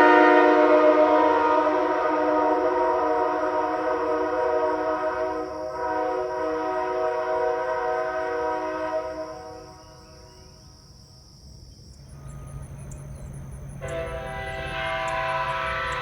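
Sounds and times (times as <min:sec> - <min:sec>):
air horn chord: 0:00.0 - 0:09.8, 0:12.2 - 0:16.0
insects chirping: 0:01.2 - 0:16.0
low hum: 0:12.1 - 0:16.0.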